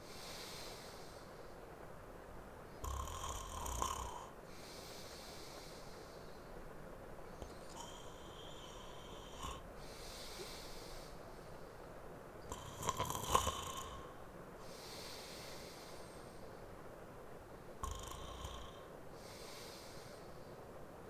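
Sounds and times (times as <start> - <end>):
man snoring: 2.8 - 4.4, 7.7 - 10.7, 12.5 - 14.2, 17.8 - 19.9
soft breath out: 7.3 - 11.9, 13.9 - 16.6, 18.7 - 20.6.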